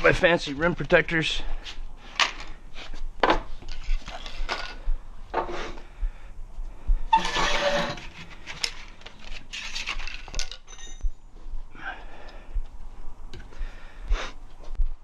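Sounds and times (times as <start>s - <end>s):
tire tools clinking on rim: 10.3s - 11.2s.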